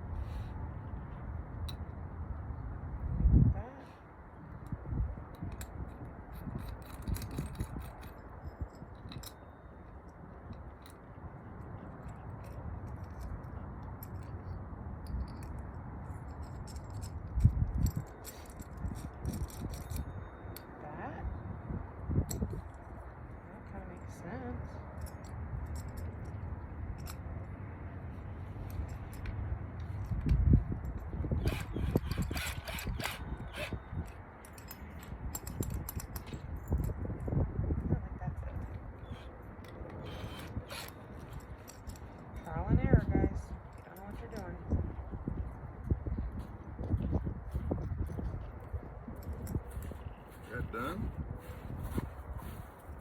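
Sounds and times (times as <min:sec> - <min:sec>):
small hard parts clicking: 0:04.6 - 0:20.7, 0:24.9 - 0:27.3, 0:28.6 - 0:37.0, 0:39.0 - 0:42.5.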